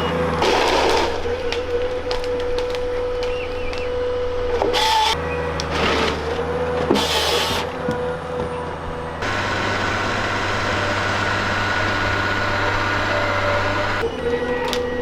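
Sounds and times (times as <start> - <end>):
diesel engine running: 8.2 - 14.0.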